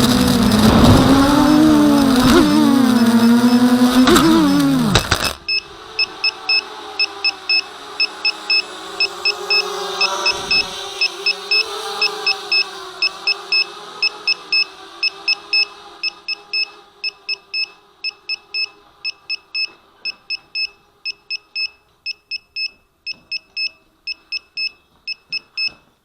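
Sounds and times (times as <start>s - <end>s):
pitched hum: 0.0s - 18.6s
electronic alarm beeping: 0.5s - 25.9s.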